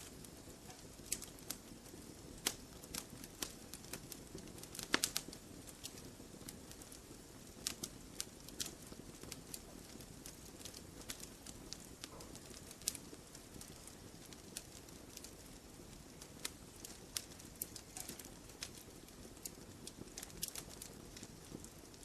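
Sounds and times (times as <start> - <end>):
campfire crackling and snapping: 0.0 - 22.0
low rumble of flames: 0.0 - 22.0.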